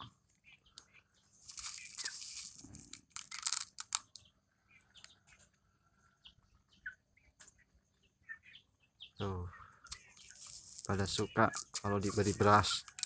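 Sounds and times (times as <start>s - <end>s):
chickens chirping softly: 0.0s - 13.0s
chickens pecking grains: 0.0s - 13.0s
rustling hiss: 1.4s - 3.9s, 10.2s - 12.8s.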